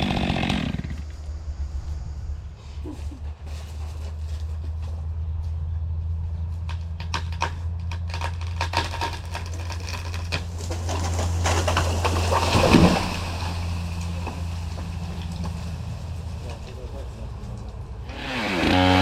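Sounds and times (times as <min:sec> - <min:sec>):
low engine hum: 0:00.7 - 0:08.6, 0:09.4 - 0:18.1
tree cracking: 0:06.6 - 0:19.0
rush of branches and foliage: 0:08.2 - 0:17.8.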